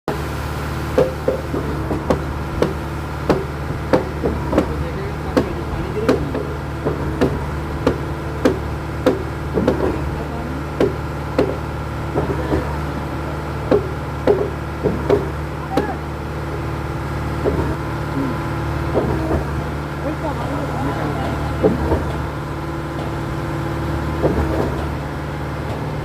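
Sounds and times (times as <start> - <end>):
concrete pump humming: 0.1 - 26.0
sharp knocks in pump line: 1.0 - 10.1, 10.8 - 12.7, 13.7 - 16.0, 17.4 - 17.8, 18.9 - 19.6, 24.2 - 25.0.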